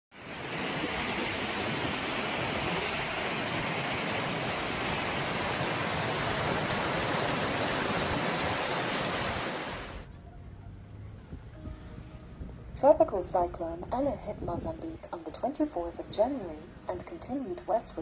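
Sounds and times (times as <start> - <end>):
floodwater rushing: 0.1 - 10.1.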